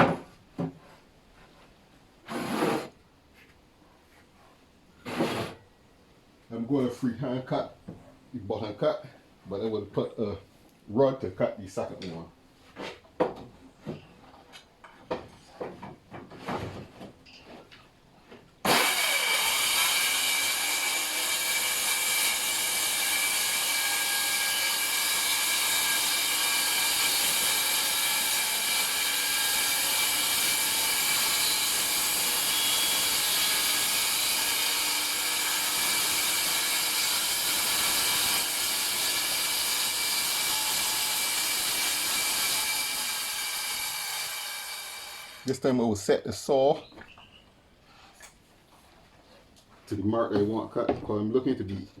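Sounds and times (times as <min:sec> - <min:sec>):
circular saw cutting plywood: 0:02.2 - 0:02.9, 0:18.6 - 0:45.5.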